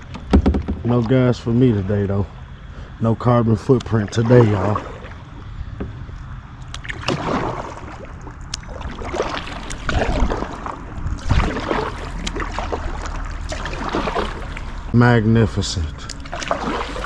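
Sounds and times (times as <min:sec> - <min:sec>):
kayak paddle splashing in water: 0:03.9 - 0:05.8, 0:06.7 - 0:15.0, 0:16.1 - 0:17.0.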